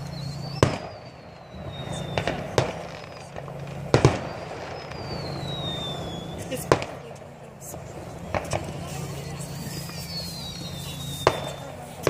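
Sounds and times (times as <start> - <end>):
firework whistle sliding down: 0.0 - 3.3, 4.1 - 6.5, 9.7 - 11.8
fireworks bangs: 0.0 - 12.0
steady low hum: 0.0 - 12.0.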